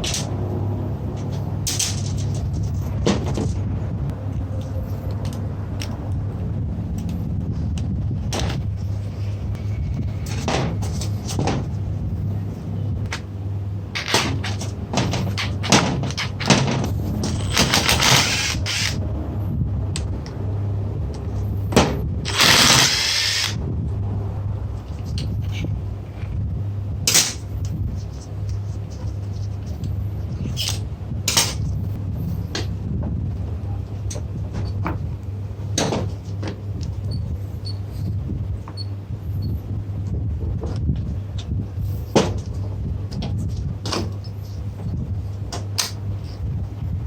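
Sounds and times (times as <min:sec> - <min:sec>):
steady low hum: 0:00.0 - 0:47.0
metal tools clinking: 0:15.3 - 0:19.0.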